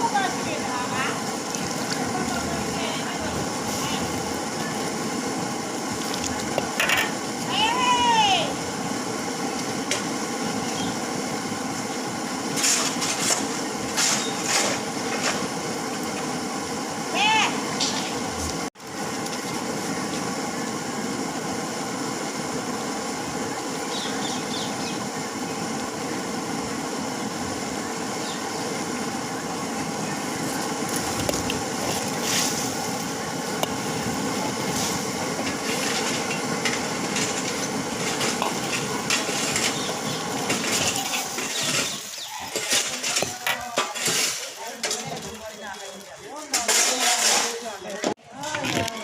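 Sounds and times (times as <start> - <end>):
cooking noise: 0.0 - 49.0
metal utensils clinking: 46.4 - 47.8.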